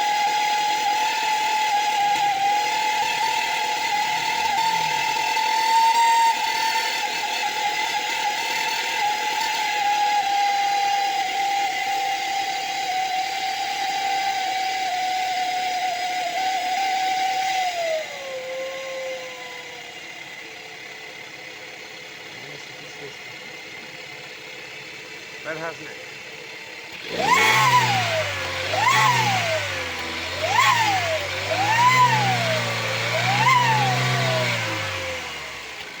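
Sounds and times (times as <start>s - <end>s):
turbocharger whistle: 0.0s - 20.4s, 26.9s - 36.0s
car engine running: 1.8s - 7.8s, 19.1s - 36.0s.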